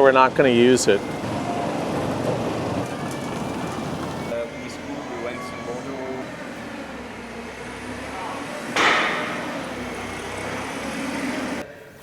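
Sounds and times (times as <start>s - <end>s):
machinery rumble: 0.0s - 11.6s
loud clattering knock: 8.8s - 9.7s.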